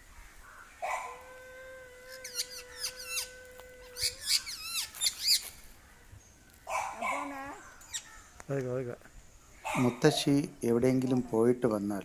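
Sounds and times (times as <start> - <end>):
parrot chirping and whistling: 4.0 - 5.5.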